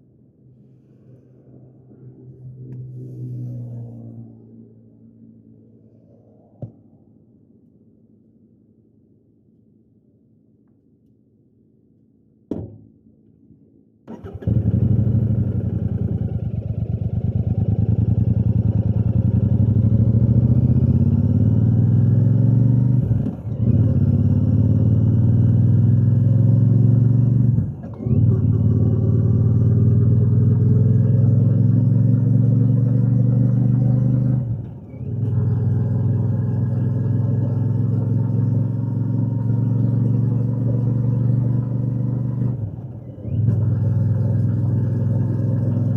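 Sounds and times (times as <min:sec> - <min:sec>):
motorcycle engine accelerating: 0:14.1 - 0:45.9.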